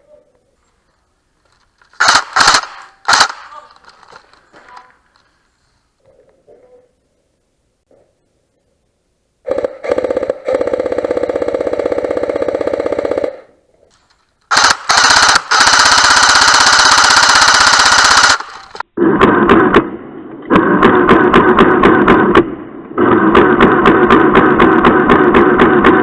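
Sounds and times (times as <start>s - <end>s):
airsoft gun full-auto bursts: 2.0s - 3.6s, 9.5s - 13.5s, 14.5s - 19.8s, 23.0s - 26.0s.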